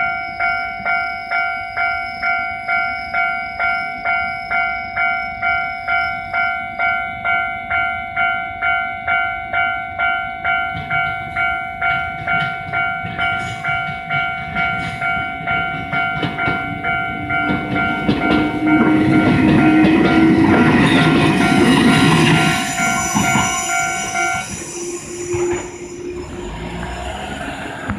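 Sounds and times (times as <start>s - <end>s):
level crossing warning bell: 0.0s - 27.0s
train rumble and wheel clatter: 0.0s - 27.9s.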